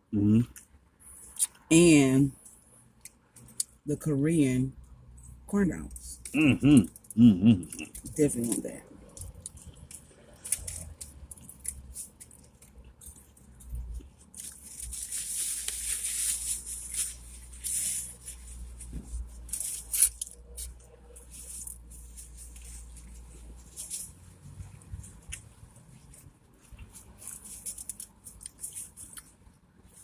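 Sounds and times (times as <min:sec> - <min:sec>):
chewing: 0:06.2 - 0:08.2
sharp paper crackles: 0:14.2 - 0:18.4
paper wrapping crinkling: 0:14.2 - 0:24.2, 0:26.0 - 0:29.3.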